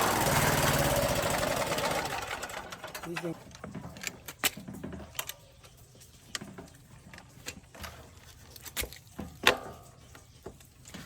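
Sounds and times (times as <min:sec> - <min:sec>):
tools clicking and knocking: 0:02.9 - 0:05.7.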